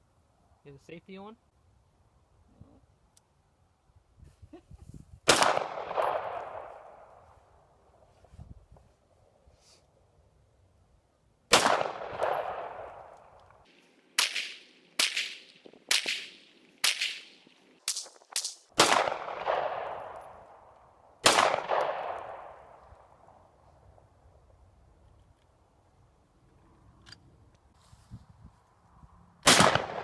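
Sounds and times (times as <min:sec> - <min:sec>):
rifle shots with echo: 0:05.3 - 0:07.1, 0:11.5 - 0:13.4, 0:14.2 - 0:22.8, 0:29.4 - 0:30.0.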